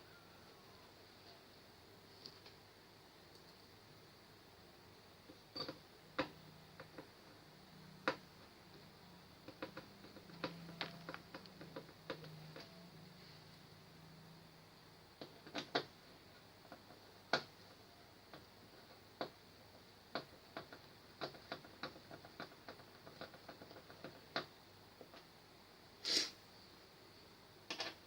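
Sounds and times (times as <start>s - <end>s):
hand tools clicking and tapping: 9.4s - 12.8s.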